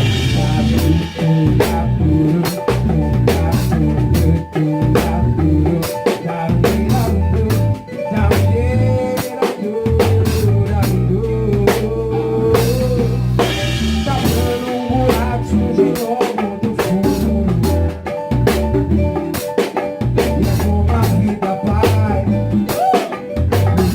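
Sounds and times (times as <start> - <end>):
drum rimshots: 0.0 - 5.2, 12.6 - 23.9
live band playing: 0.0 - 23.9.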